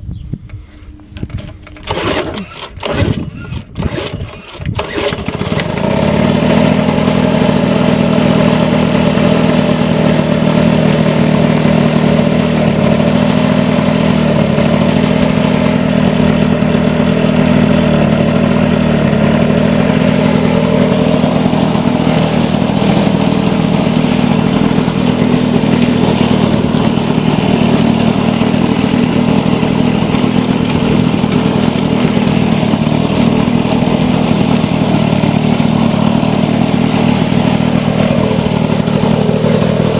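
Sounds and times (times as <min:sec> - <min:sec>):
lawn mower engine running: 0:00.5 - 0:39.9.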